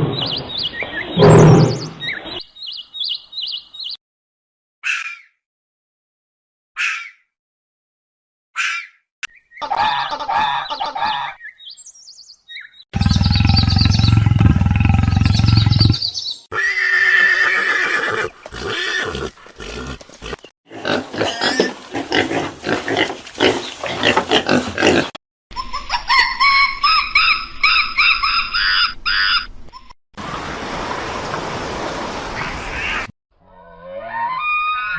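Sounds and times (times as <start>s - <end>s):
animal calls: 0.9s - 2.4s.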